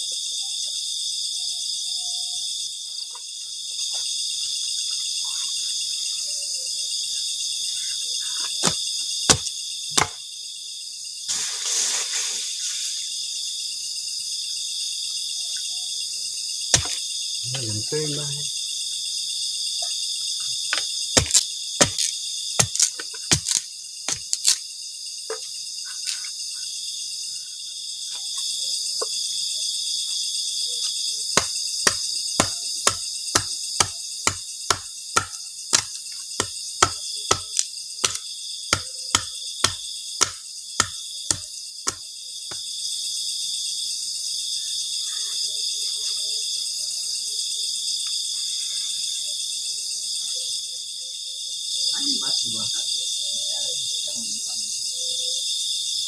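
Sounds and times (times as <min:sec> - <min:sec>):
crickets chirring: 0:00.0 - 0:56.0
sharp knocks: 0:08.6 - 0:10.2, 0:16.8 - 0:17.0, 0:31.4 - 0:42.0.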